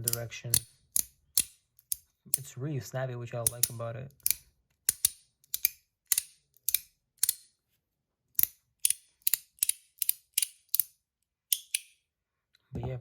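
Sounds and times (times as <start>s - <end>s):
magnetic fidget slider clicking: 0.0s - 2.5s, 3.5s - 7.4s, 8.4s - 10.9s, 11.5s - 12.0s.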